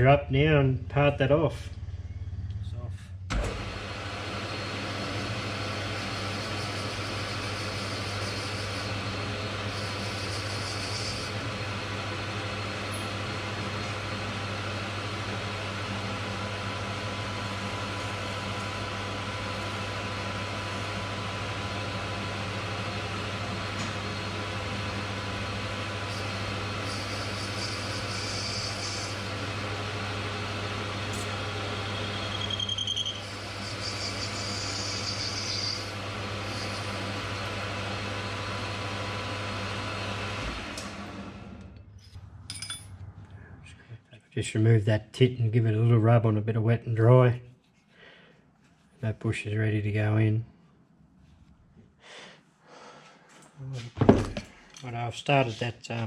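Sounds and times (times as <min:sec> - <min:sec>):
metal lathe motor hum: 0:03.3 - 0:41.8.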